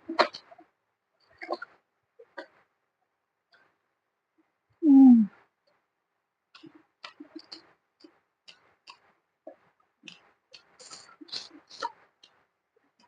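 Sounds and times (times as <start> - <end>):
person humming: 4.8 - 5.3.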